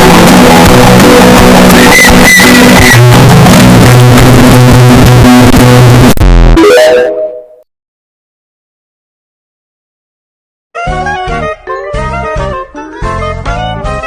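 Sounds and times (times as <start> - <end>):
synthesizer music with bass: 0.0 - 7.5.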